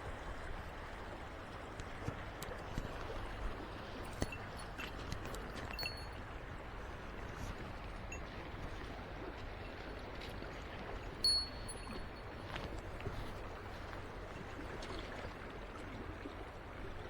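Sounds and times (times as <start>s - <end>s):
high metallic jingle: 5.7s - 6.2s, 11.2s - 12.4s.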